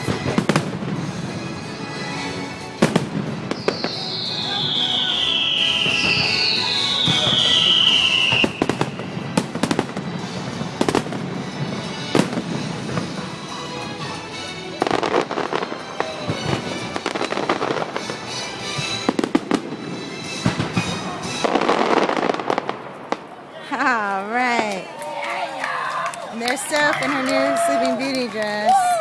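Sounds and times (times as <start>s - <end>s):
background music: 0.0s - 22.8s
fireworks banging: 0.0s - 24.8s, 26.4s - 29.0s
fireworks crackling: 0.0s - 29.0s.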